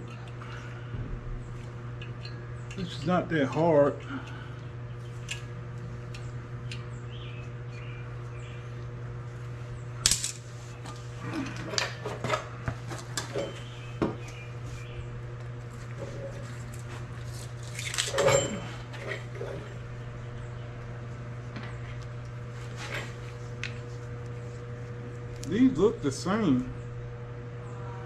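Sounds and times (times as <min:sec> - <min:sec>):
metal tools clanking: 0:10.1 - 0:13.8, 0:17.6 - 0:19.8.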